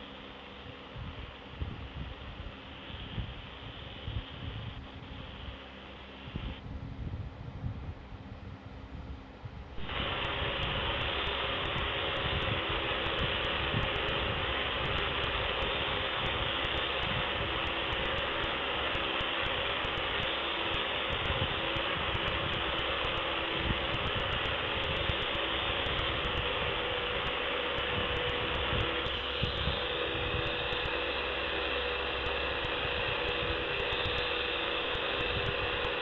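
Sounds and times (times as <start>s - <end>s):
steady hiss: 0.0s - 6.7s, 9.3s - 36.0s
low mechanical hum: 0.0s - 36.0s
faint steady tone: 9.8s - 36.0s.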